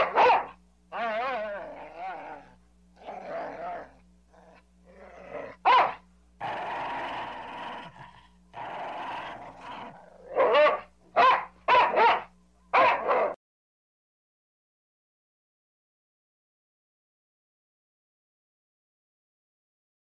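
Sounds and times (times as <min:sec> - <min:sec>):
dog barking: 0:00.0 - 0:00.6, 0:05.6 - 0:06.0, 0:10.3 - 0:13.4
dog snarling and growling: 0:00.9 - 0:10.9.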